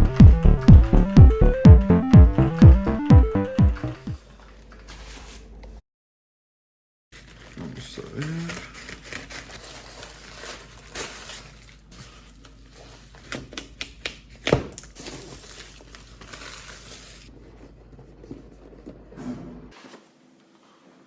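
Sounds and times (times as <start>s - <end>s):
knocks and clicks: 0.0s - 4.2s
packaging crinkling and rustling: 4.2s - 5.6s, 7.2s - 18.9s.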